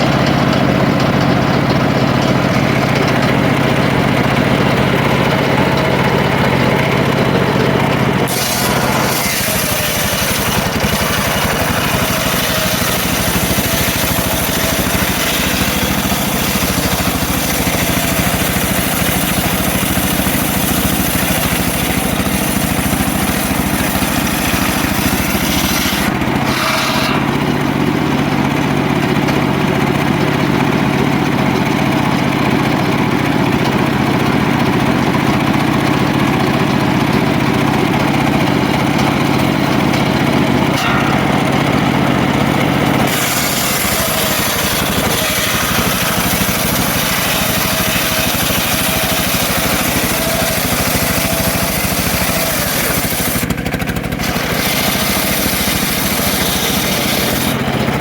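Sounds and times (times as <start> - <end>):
engine hum: 0.0 - 58.0
saw blade ripping through log: 8.0 - 27.4, 39.3 - 58.0.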